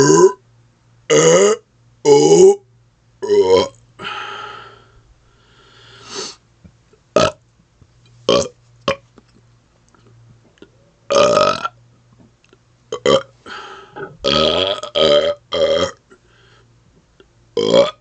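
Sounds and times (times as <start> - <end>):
man burping: 0.0 - 0.4, 1.1 - 2.6, 3.2 - 4.3, 7.2 - 7.4, 8.3 - 9.0, 11.1 - 11.8, 12.9 - 13.3, 13.9 - 16.1, 17.6 - 18.0.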